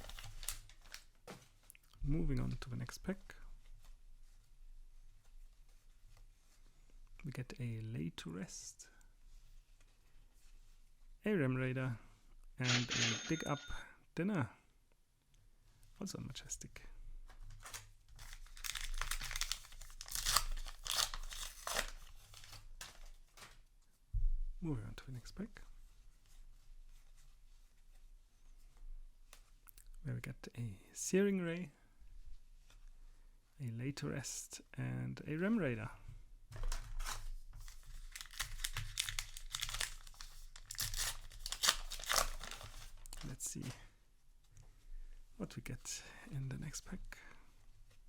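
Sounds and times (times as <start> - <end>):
foil wrapper crinkling: 0.0 - 1.1, 17.6 - 23.6, 37.0 - 43.3.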